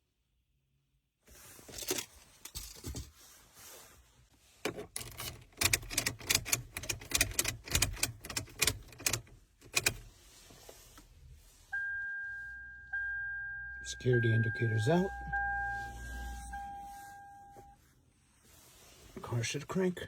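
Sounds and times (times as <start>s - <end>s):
clicks and rattles of car key: 4.9s - 10.0s.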